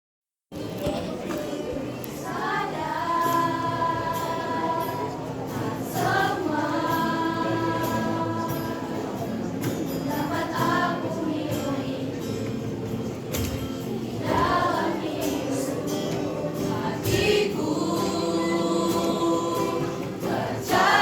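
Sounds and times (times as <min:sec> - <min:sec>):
choir singing sustained notes: 0:02.2 - 0:12.0, 0:14.2 - 0:21.0.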